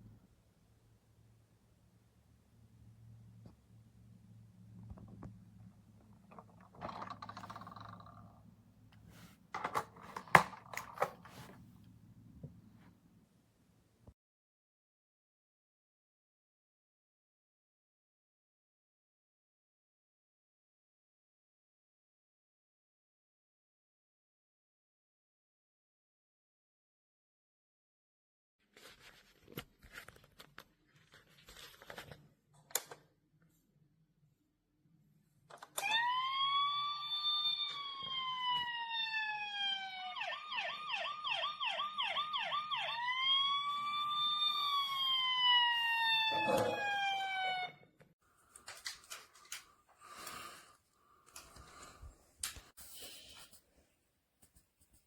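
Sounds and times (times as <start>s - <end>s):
plastic toy parts rustling: 6.2s - 8.4s, 9.1s - 11.6s, 48.4s - 50.3s
plastic toy rattling: 6.3s - 8.4s.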